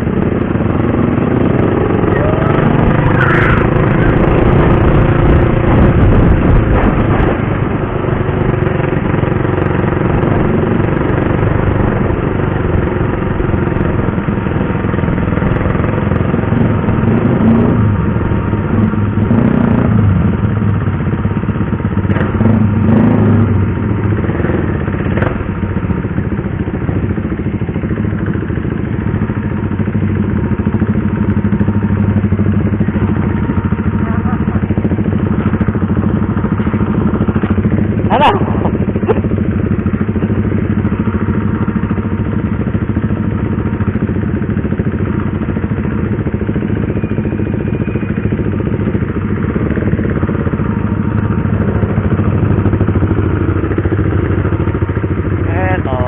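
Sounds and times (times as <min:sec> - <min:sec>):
riding wind noise: 0:00.0 - 0:21.1
motorcycle engine revving: 0:00.0 - 0:56.0.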